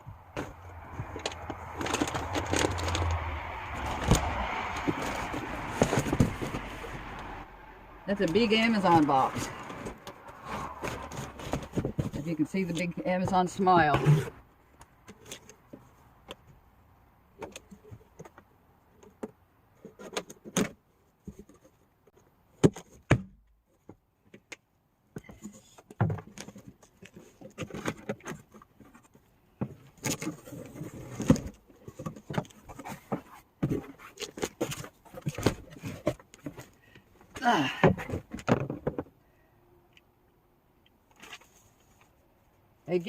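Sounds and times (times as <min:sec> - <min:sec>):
cardboard box being opened: 0:00.3 - 0:07.5, 0:08.2 - 0:12.3.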